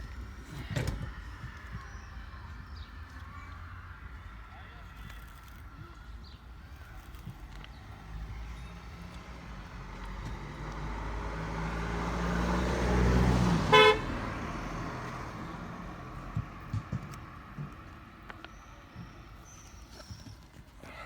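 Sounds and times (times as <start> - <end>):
passing vehicle engine: 7.5 - 18.3
short horn toot: 13.7 - 14.1.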